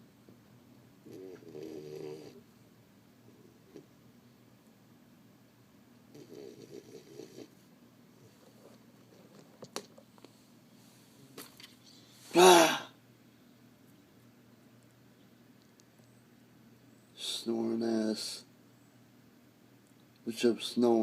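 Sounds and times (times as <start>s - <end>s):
dog snoring: 1.0s - 2.4s, 6.1s - 7.6s.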